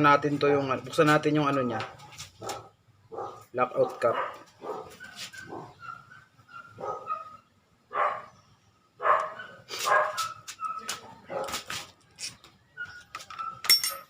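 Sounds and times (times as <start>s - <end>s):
dog barking: 2.4s - 8.4s, 9.0s - 11.7s.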